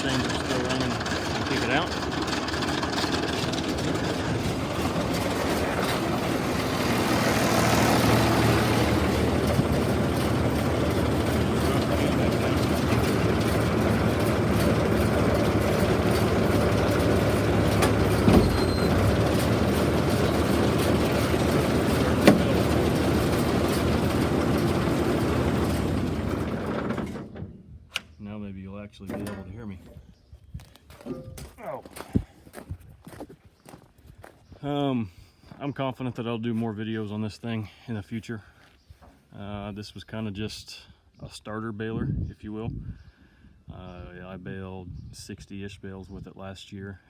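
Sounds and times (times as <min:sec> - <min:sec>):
baler chains clattering: 0:00.0 - 0:27.0.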